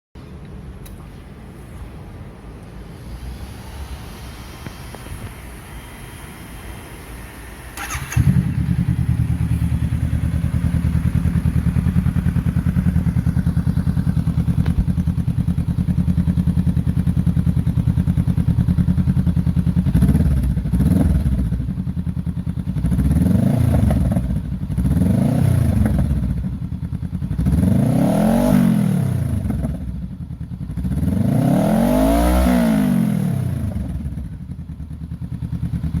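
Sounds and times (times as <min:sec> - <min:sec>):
motorcycle engine starting: 0:07.0 - 0:36.0
motorcycle engine revving: 0:07.7 - 0:36.0
motorcycle engine idling: 0:07.8 - 0:25.1, 0:25.8 - 0:27.7, 0:29.4 - 0:31.1, 0:33.7 - 0:36.0.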